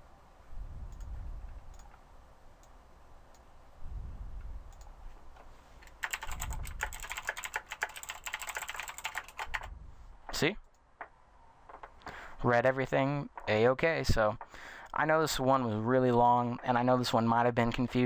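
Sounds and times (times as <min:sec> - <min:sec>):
computer keyboard typing: 0:05.8 - 0:09.7.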